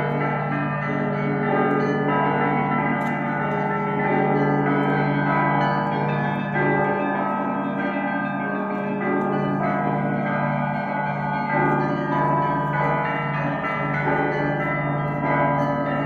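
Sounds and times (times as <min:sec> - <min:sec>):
church bells ringing: 0:00.0 - 0:16.0.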